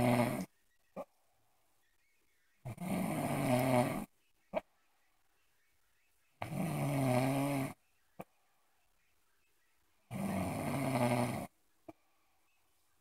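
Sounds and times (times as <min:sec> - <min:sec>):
loud buzzing snores: 0:00.0 - 0:00.5, 0:02.7 - 0:04.1, 0:06.4 - 0:07.8, 0:10.1 - 0:11.5.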